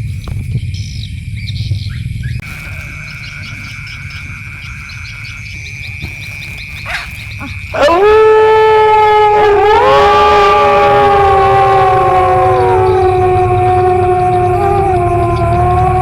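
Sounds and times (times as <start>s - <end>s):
faint chirps: 0.0s - 8.2s, 11.0s - 16.0s
low night rumble: 0.0s - 16.0s
wolves howling: 6.9s - 16.0s.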